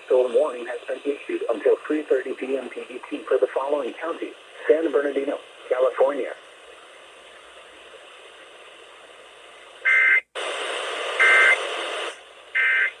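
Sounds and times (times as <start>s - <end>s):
radio receiver hiss: 0.0s - 13.0s
shrill two-tone data bursts: 9.8s - 10.2s, 12.6s - 13.0s.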